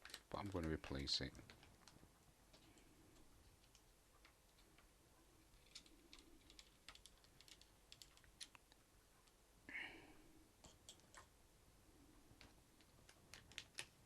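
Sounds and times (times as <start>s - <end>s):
screwdriver clicking on laptop internals: 5.6s - 8.6s.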